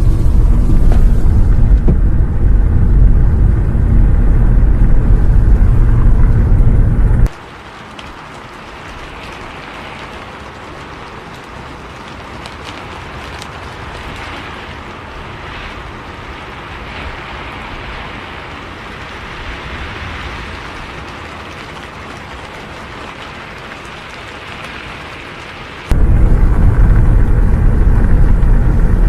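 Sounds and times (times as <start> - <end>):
bus rumbling: 0.0 - 7.3, 25.9 - 29.0
raindrops ticking: 0.0 - 15.2, 20.0 - 28.8
rain hissing: 0.0 - 29.0.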